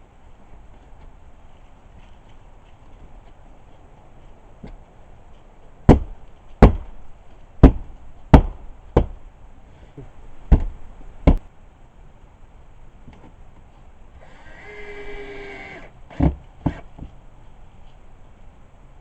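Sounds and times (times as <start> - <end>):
knocks on plywood: 5.9 - 6.9, 7.6 - 9.2.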